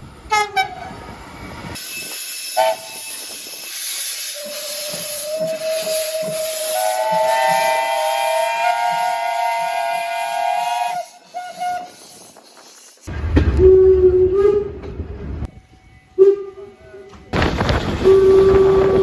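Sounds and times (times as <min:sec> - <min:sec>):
train rumble: 0:00.0 - 0:19.0
lower-pitched horn blast: 0:18.0 - 0:19.0.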